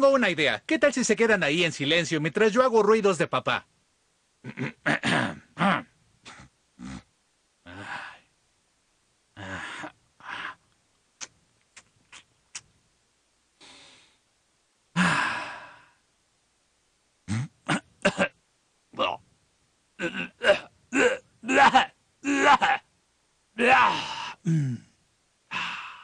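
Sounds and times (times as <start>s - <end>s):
man sighing and groaning: 4.5s - 8.3s, 9.4s - 10.6s, 14.9s - 16.0s, 20.0s - 22.8s, 23.6s - 26.0s.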